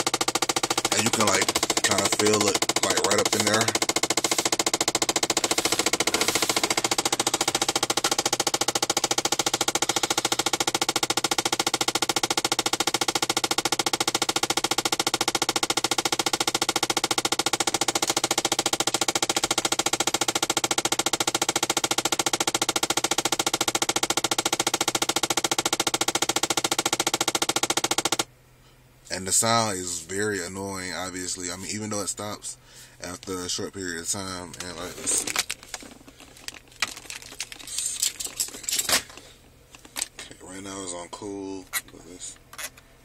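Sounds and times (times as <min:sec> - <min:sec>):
rapid steady clicking in car: 0:00.0 - 0:28.3, 0:34.5 - 0:38.8.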